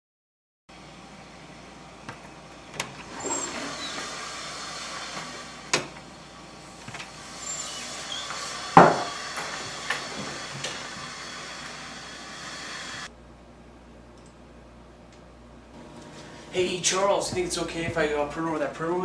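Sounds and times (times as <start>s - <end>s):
steady hiss: 2.8s - 13.1s, 15.8s - 19.0s.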